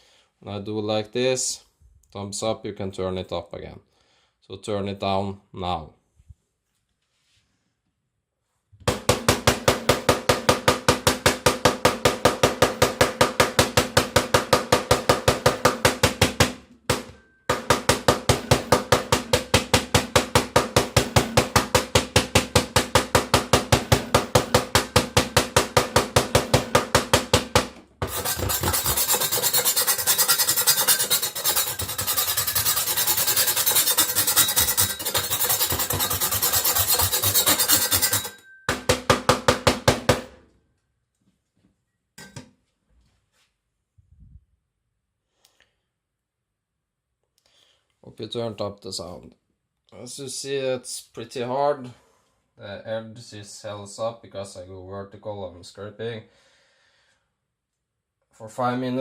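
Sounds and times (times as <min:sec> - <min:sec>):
cleaver striking cutting board: 0:08.9 - 0:40.3
blade scraping across board: 0:28.1 - 0:38.3.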